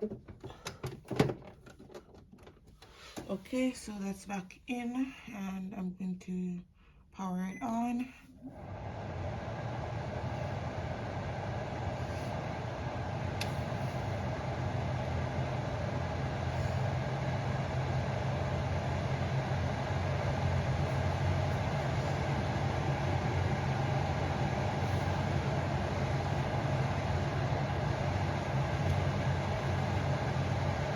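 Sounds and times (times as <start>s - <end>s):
humidifier fan humming: 7.5s - 30.9s.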